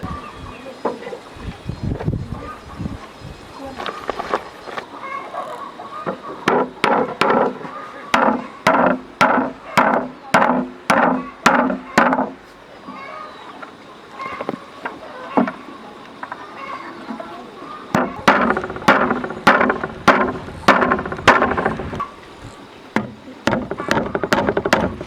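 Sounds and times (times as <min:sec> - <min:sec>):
hammer striking wood: 0:06.5 - 0:12.4, 0:18.0 - 0:22.1, 0:23.0 - 0:25.0.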